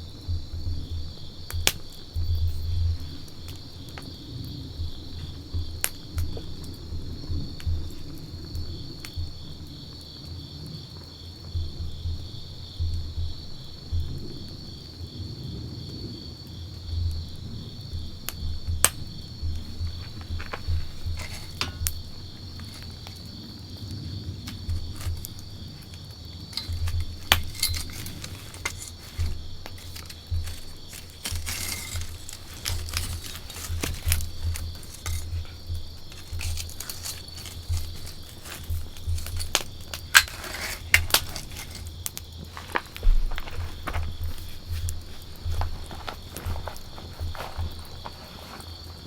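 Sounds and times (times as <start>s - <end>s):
fire popping and snapping: 0.0s - 15.2s, 15.8s - 49.0s
campfire crackling: 0.0s - 49.0s
low fluttering rumble of flames: 0.0s - 49.0s.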